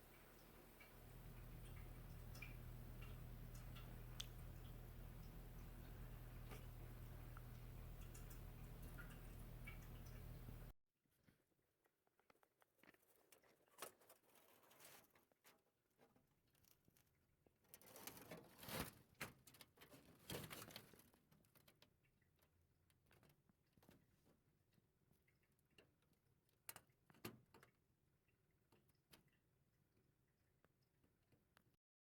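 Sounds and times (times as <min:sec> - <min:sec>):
crackles: 0:00.0 - 0:10.7
faint clicks and rustling: 0:00.0 - 0:10.7
low hum: 0:00.0 - 0:10.7.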